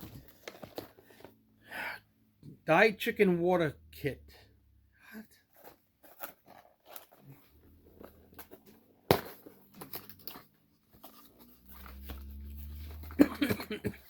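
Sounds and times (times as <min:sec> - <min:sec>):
packaging clicks and rustles: 0:00.0 - 0:01.4, 0:05.5 - 0:13.6.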